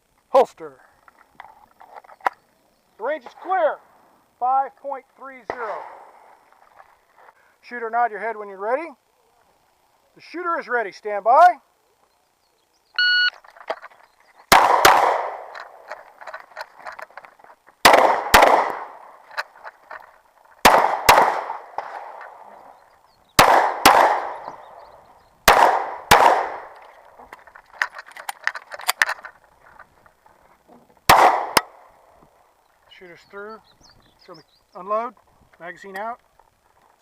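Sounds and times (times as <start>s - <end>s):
pistol shots with echo: 14.5s - 15.8s, 17.8s - 19.1s, 20.6s - 22.5s, 23.4s - 24.8s, 25.4s - 26.8s, 31.1s - 31.9s.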